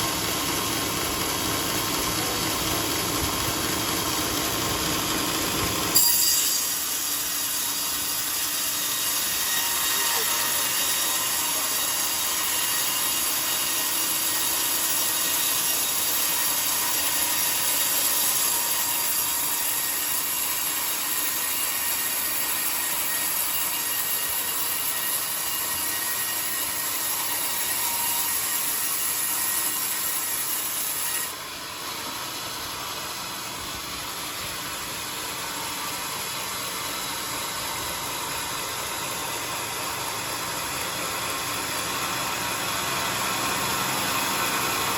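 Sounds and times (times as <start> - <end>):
bandsaw cutting log: 0.0 - 44.9.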